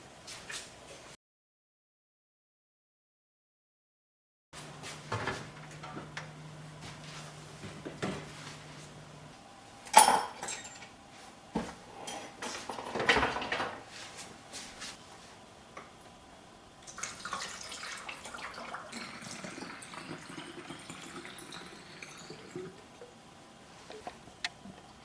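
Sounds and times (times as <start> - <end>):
low steady hum: 4.6 - 25.0
dishes clinking and clacking: 9.9 - 10.9, 12.0 - 13.8.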